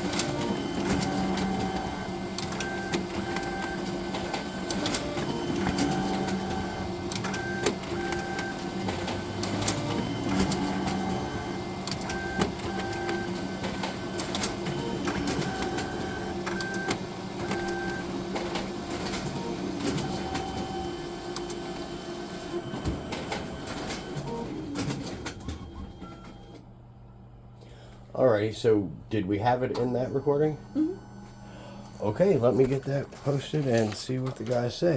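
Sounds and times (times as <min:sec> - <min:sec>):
printer mechanism clicks: 0:00.0 - 0:21.7
printer motor whirring: 0:00.0 - 0:26.7, 0:29.5 - 0:34.9.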